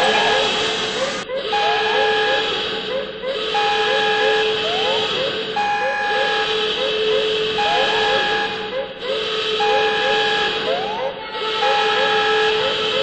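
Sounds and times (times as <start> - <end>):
two-note alarm beep: 3.5 - 13.0.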